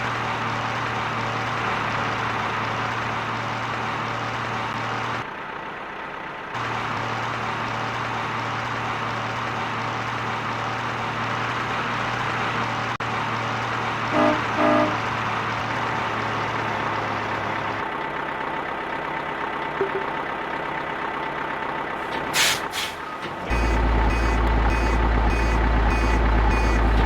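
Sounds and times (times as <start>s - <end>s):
truck engine running: 0.0s - 27.0s
air brakes hissing: 22.0s - 23.4s
reversing beeps: 23.5s - 27.0s.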